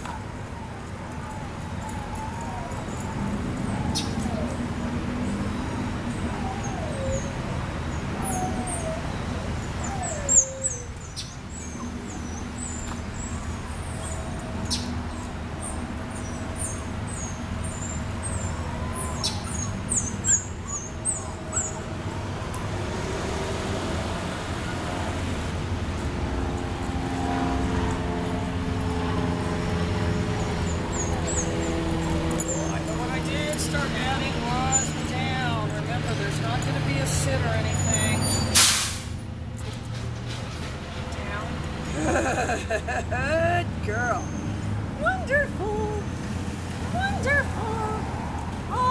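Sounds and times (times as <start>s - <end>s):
dog whining: 0.0s - 15.3s, 16.2s - 21.9s, 30.9s - 35.7s
low traffic rumble: 0.0s - 48.9s
vehicle hum: 0.0s - 48.9s.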